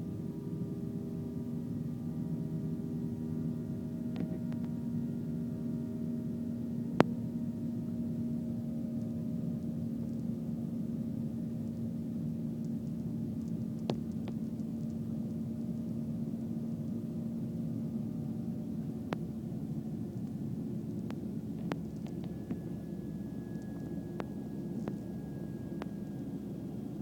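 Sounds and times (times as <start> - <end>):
jet engines droning in cabin: 0.0 - 27.0
faint clicks: 12.6 - 15.0, 20.2 - 22.7, 23.6 - 25.1.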